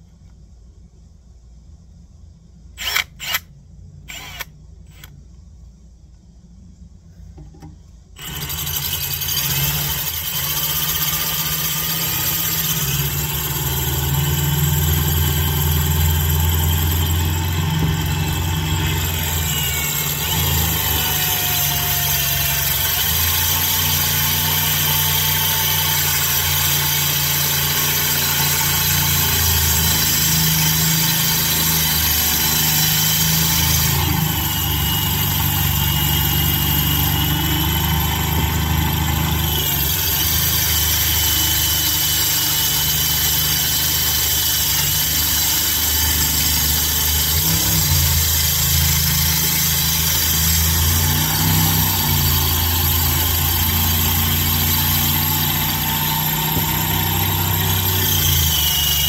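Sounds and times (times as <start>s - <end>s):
cordless drill boring into steel: 2.8s - 3.5s, 4.1s - 5.1s, 8.2s - 59.0s
sharp clicks: 2.8s - 3.5s.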